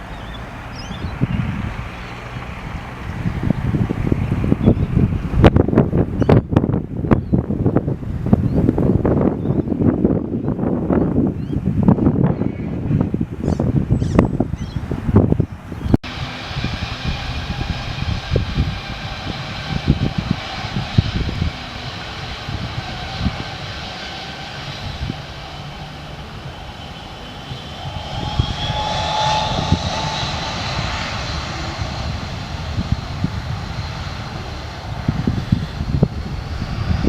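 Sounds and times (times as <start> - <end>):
airliner engines whining: 0.0 - 37.0
higher whine rising in pitch: 16.0 - 37.0.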